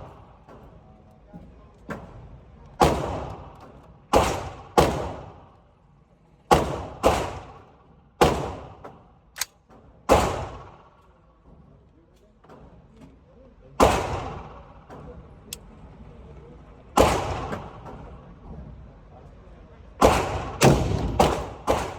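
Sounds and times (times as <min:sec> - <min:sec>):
rifle shots echoing: 0:02.8 - 0:05.5, 0:06.5 - 0:08.8, 0:10.1 - 0:10.9, 0:13.8 - 0:14.7, 0:17.0 - 0:17.8, 0:20.0 - 0:21.9.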